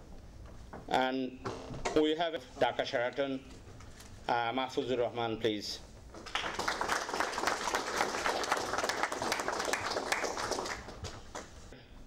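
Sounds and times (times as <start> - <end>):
audience applauding: 6.2 - 11.5.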